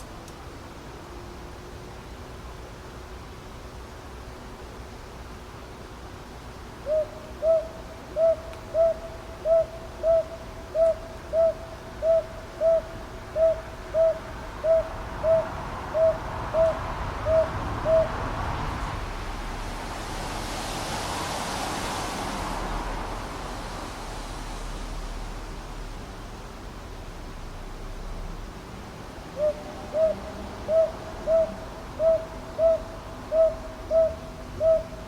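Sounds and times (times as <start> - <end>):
soft rush of noise: 0.0 - 35.0
owl hooting: 6.8 - 18.1, 29.4 - 35.0.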